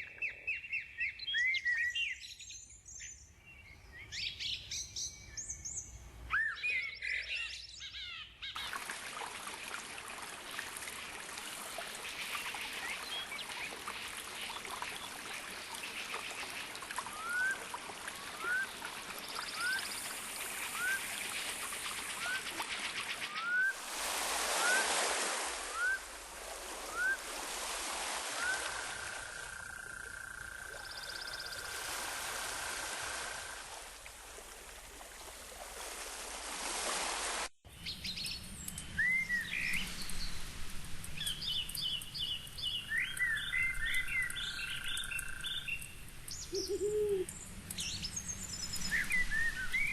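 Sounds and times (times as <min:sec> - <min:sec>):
flowing water rushing: 0:08.5 - 0:37.5
bird whistling: 0:25.7 - 0:26.0, 0:46.5 - 0:47.3.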